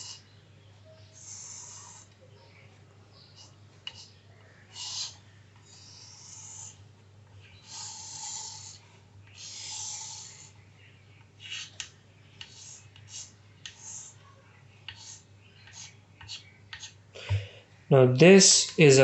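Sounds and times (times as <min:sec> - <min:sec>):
pen scratching on paper: 0:01.1 - 0:02.1, 0:04.7 - 0:06.8, 0:07.7 - 0:08.8, 0:09.4 - 0:10.5, 0:11.4 - 0:11.8, 0:12.4 - 0:14.2, 0:14.9 - 0:17.0.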